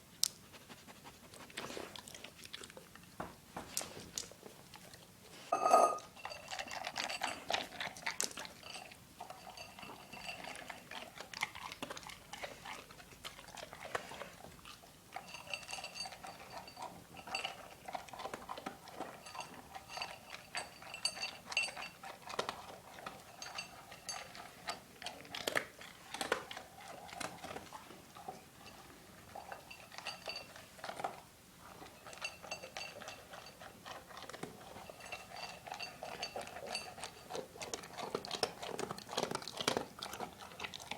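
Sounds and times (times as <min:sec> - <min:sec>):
dog chewing and crunching: 0:00.2 - 0:40.9
clinks against bowl: 0:05.5 - 0:10.8, 0:15.1 - 0:18.3, 0:19.0 - 0:24.8, 0:28.3 - 0:31.0, 0:31.8 - 0:37.4.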